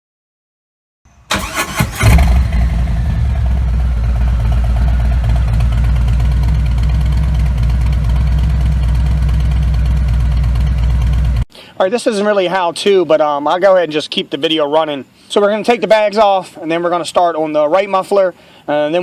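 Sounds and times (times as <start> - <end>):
starter cranking: 1.1 - 3.6
motorcycle engine idling: 1.1 - 11.4.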